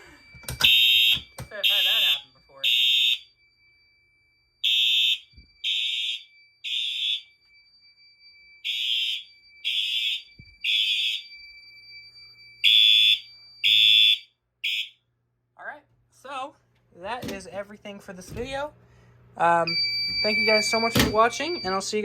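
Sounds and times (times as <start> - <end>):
fire alarm horn blasts: 0.5 - 3.4, 4.6 - 7.6, 8.6 - 11.6, 12.6 - 15.1, 19.7 - 22.0.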